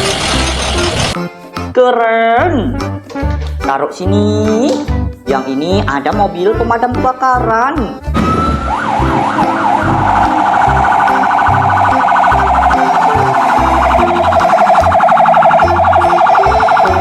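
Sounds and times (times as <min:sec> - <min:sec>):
background music with beat: 0:00.0 - 0:17.0
electronic fire engine siren: 0:08.1 - 0:17.0.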